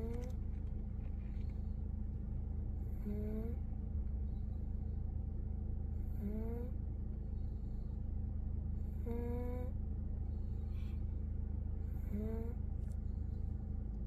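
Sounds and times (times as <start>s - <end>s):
baby snoring hums: 0.0s - 0.3s, 2.8s - 3.6s, 6.0s - 6.8s, 8.9s - 9.8s, 11.8s - 12.6s
steady low rumble: 0.0s - 14.0s.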